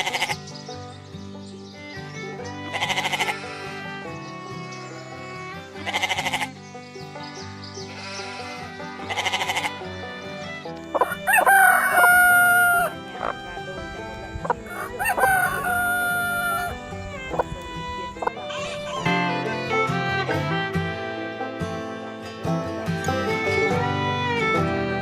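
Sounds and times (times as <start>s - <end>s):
sheep bleating: 2.7s - 4.0s, 5.8s - 6.6s, 7.9s - 9.9s, 11.0s - 19.2s
rooster crowing: 11.0s - 13.4s, 14.4s - 17.4s.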